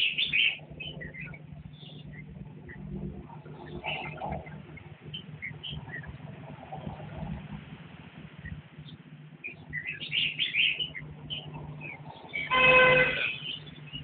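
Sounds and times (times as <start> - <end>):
birds chirping: 0.0 - 14.0
low steady hum: 0.0 - 14.0
horn-like tone: 12.4 - 13.5.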